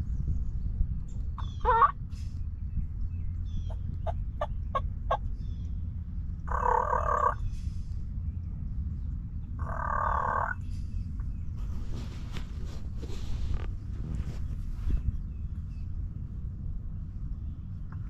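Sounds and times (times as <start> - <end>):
steady low rumble: 0.0 - 18.0
turkey gobbling: 1.6 - 1.9, 6.5 - 7.4, 9.6 - 10.6.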